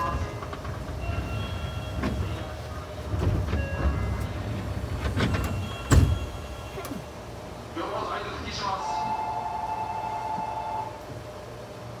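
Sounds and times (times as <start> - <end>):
wheels clicking over rail joints: 0.0 - 6.1
subway train rumble: 0.0 - 12.0.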